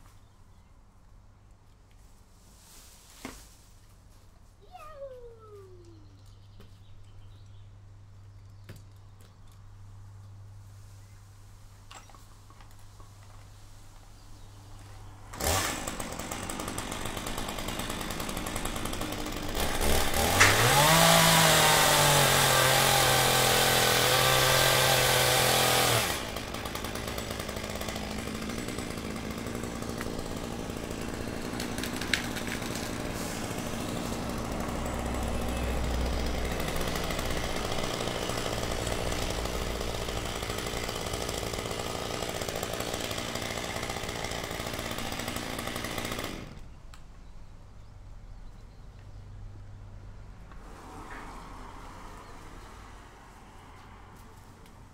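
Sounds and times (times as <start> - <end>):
chainsaw revving and idling: 15.2 - 46.7.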